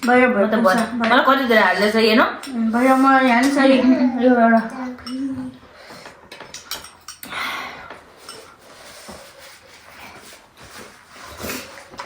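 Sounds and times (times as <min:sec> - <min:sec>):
utensils clicking on dishes: 0:00.0 - 0:03.8, 0:04.4 - 0:09.6.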